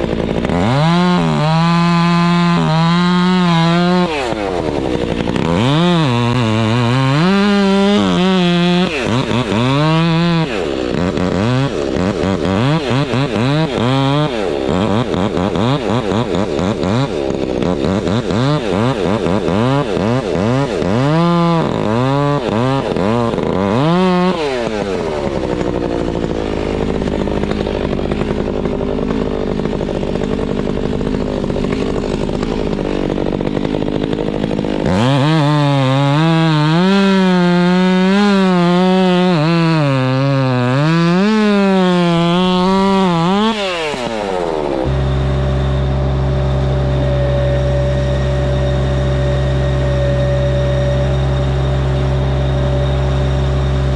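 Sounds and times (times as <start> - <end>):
chainsaw revving in wood: 0.0 - 53.9
low engine hum: 44.6 - 53.9.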